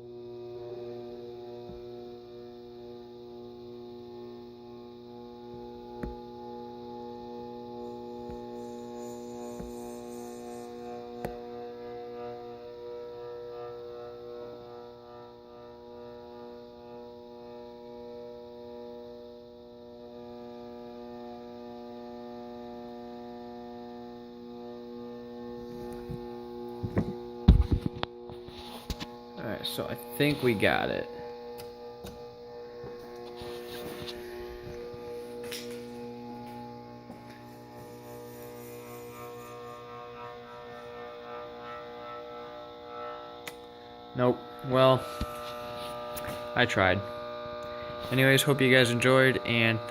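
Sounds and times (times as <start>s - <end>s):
mains buzz: 0.0s - 49.9s
ceiling fan motor humming: 19.3s - 49.9s.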